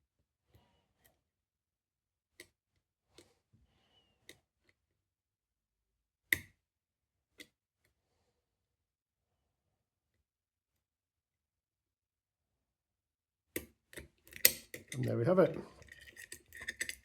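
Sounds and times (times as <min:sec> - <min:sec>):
metallic clicks of lock picking: 0:13.6 - 0:15.0.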